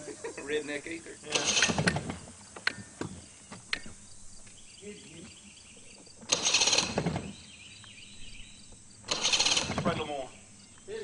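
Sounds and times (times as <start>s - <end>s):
engine turning over: 1.3s - 2.7s, 6.2s - 7.7s, 9.0s - 10.3s
recoil starter cord rattling: 1.3s - 2.9s, 6.1s - 7.5s, 9.0s - 10.3s.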